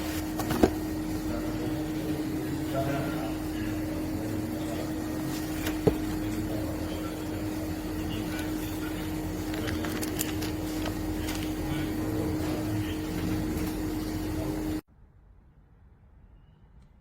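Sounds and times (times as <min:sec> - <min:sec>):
mechanical hum: 0:00.0 - 0:17.0.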